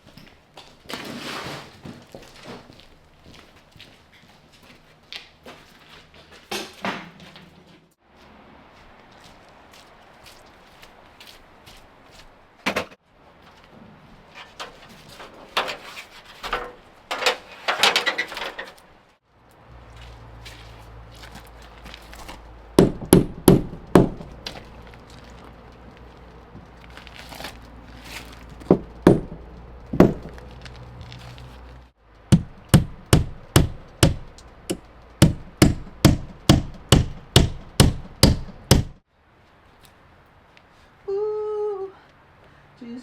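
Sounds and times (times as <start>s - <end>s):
hammer nailing wood: 22.8s - 24.4s, 28.6s - 29.4s, 30.0s - 30.4s, 32.3s - 39.0s.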